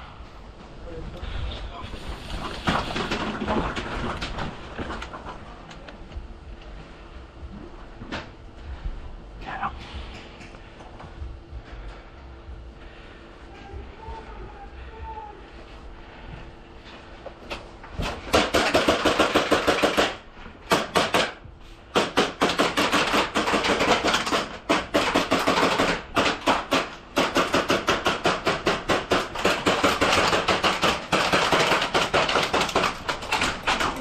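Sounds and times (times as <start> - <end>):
airsoft gun firing bursts: 18.3 - 33.9.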